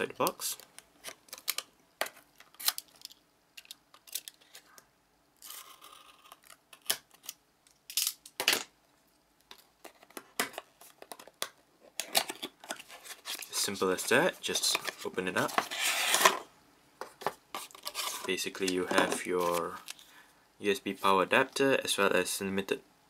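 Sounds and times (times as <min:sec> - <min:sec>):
rustling scrape: 0:14.9 - 0:16.4, 0:17.5 - 0:18.4.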